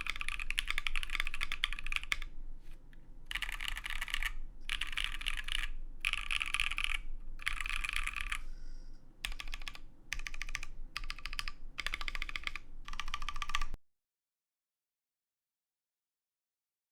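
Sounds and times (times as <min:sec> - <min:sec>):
mechanical keyboard typing: 0:00.0 - 0:02.3, 0:03.3 - 0:08.4, 0:09.2 - 0:13.8.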